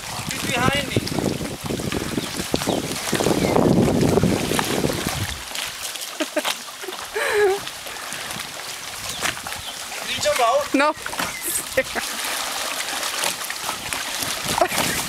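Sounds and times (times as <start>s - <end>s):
wind buffeting microphone: 0.0s - 5.8s, 7.2s - 12.0s, 13.6s - 15.0s
canoe on water: 0.0s - 15.0s.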